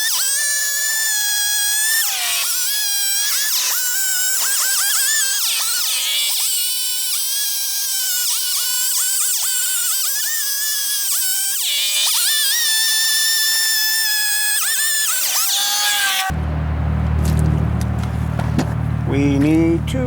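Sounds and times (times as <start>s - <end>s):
chainsaw cutting log: 0.0s - 16.4s.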